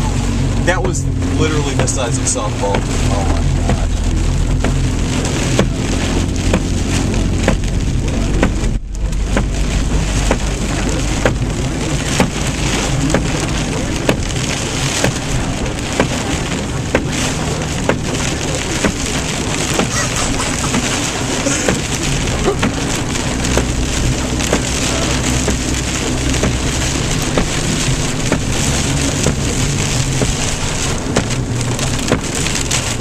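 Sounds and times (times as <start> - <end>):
heavy rain on a vehicle: 0.0 - 33.0
hail hitting metal body: 0.6 - 33.0.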